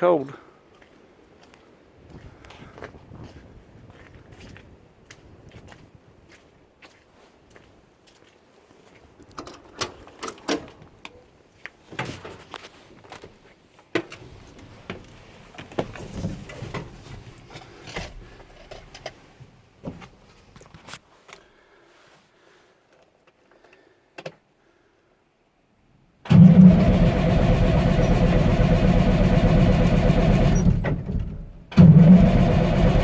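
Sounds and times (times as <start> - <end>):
handling clicks and rustling: 9.2 - 11.2.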